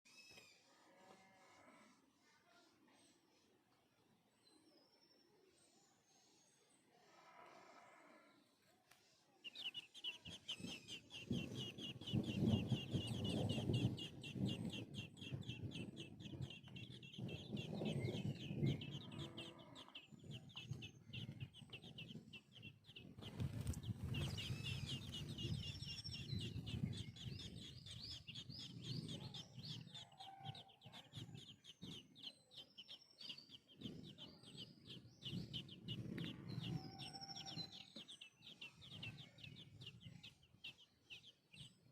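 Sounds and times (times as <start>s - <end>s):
hatchlings chirping: 9.0s - 41.9s
higher bird calls: 9.4s - 41.3s
low uneven rumbling: 10.0s - 30.0s.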